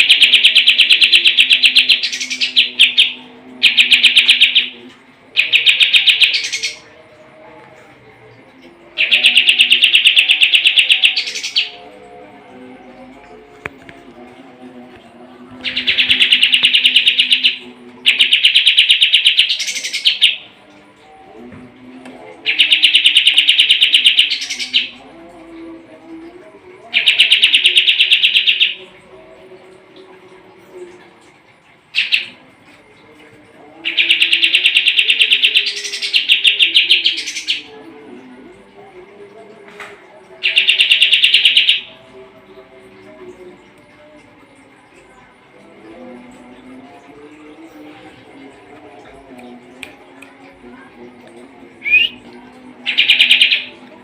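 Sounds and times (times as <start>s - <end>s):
bird singing fast trills: 9.0s - 11.8s, 15.7s - 20.4s, 27.0s - 28.8s, 40.4s - 41.9s, 51.8s - 52.2s, 52.9s - 53.8s
songbird singing rapid trills: 51.8s - 52.2s.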